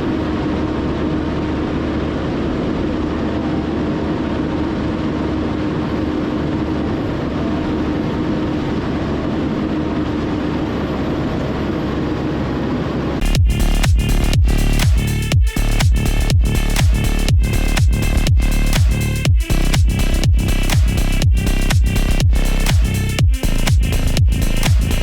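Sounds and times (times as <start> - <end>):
bulldozer diesel engine running: 0.0 - 25.0
electronic dance music: 13.2 - 25.0.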